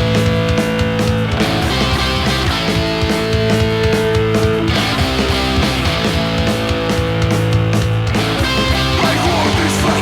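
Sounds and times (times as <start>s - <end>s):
rock band playing from vinyl: 0.0s - 10.0s.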